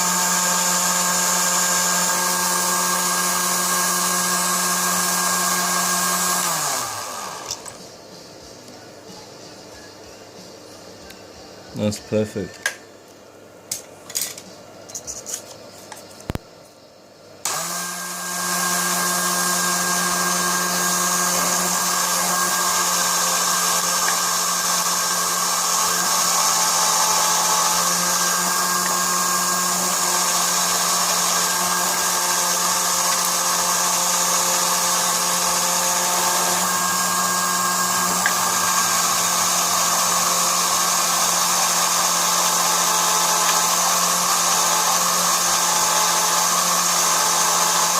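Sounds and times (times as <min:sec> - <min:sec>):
mini lathe motor whine: 0:00.0 - 0:07.8, 0:17.4 - 0:47.9.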